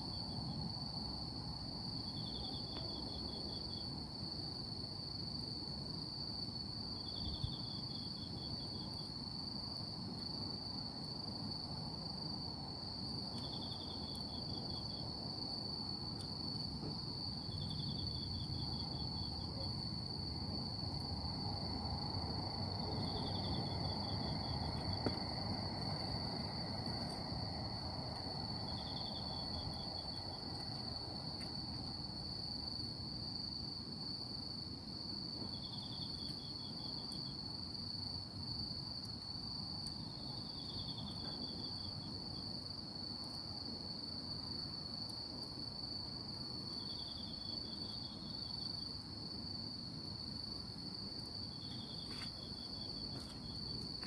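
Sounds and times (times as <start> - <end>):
insect high steady trill: 0.0 - 54.0
low steady hiss: 0.0 - 54.0
insect pulsed chirp: 11.5 - 54.0.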